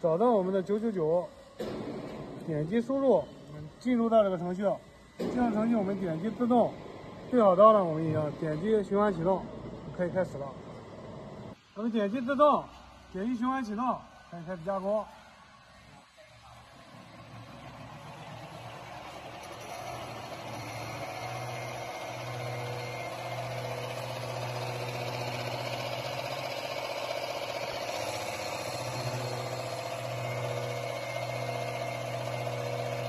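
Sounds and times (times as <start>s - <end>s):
wood lathe machine humming: 17.1s - 33.0s.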